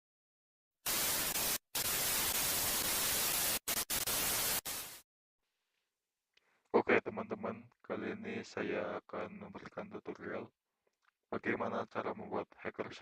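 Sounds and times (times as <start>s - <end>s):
loud static hiss: 0.8s - 5.0s.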